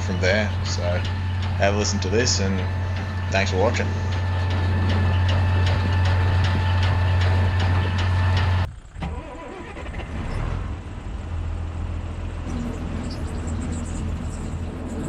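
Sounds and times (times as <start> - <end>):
regular engine ticking: 0.0 - 10.2
high-pitched engine screech: 0.0 - 10.7, 12.4 - 15.0
tractor engine running: 0.0 - 15.0.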